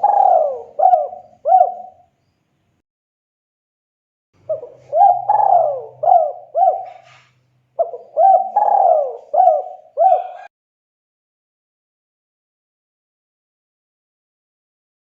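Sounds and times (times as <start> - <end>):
dove cooing: 0.0 - 2.1, 4.4 - 10.5.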